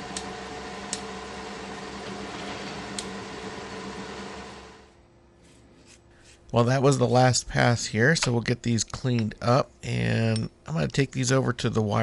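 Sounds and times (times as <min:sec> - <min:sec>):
milling machine running: 0:00.0 - 0:04.9.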